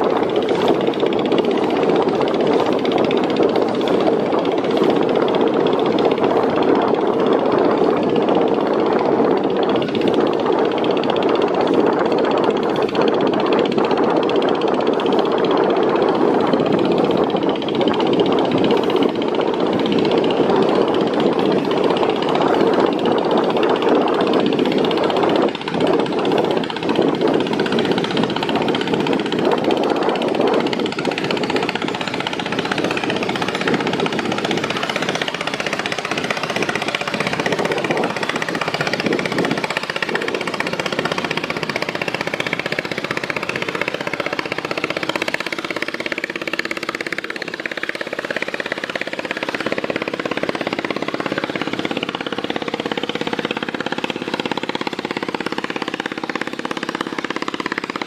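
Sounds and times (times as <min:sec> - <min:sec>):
boat engine running loudly: 0:00.0 - 0:58.0.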